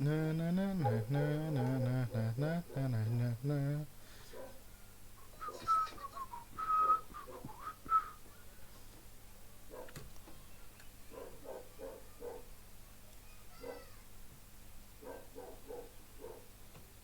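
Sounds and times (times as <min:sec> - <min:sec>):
faint low vocal sounds: 0:00.0 - 0:04.6
person whistling: 0:05.4 - 0:08.2.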